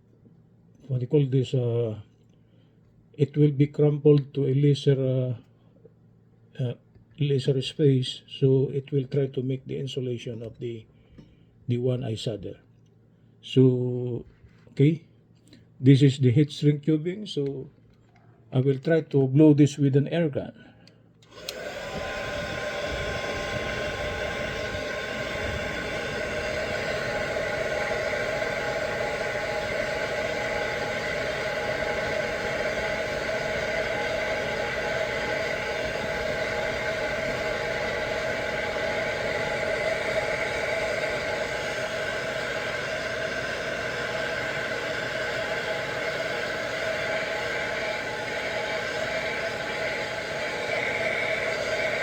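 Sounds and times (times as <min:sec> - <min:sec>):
hot air gun fan whine: 0:21.2 - 0:52.0.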